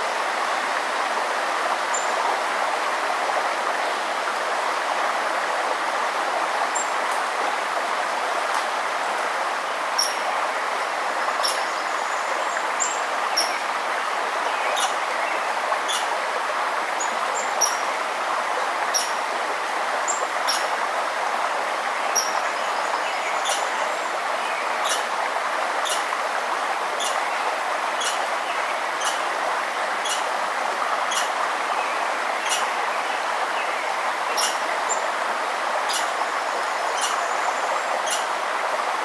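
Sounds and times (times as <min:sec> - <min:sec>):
forest stream running: 0:00.0 - 0:39.0
bird chirping: 0:34.4 - 0:34.6.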